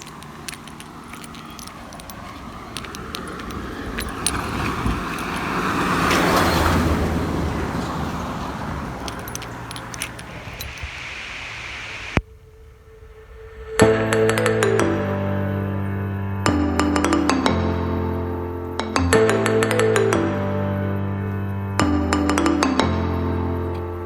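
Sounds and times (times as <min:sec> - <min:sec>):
motor vehicle passing: 0:00.0 - 0:12.2.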